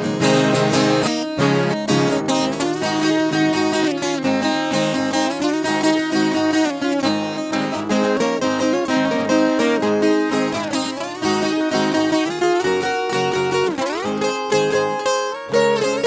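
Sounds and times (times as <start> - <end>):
plucked folk guitar: 0.0 - 16.0.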